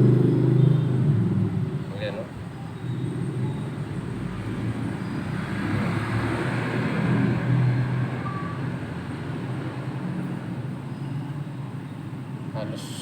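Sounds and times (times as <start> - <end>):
vehicle passing: 0.0 - 10.6.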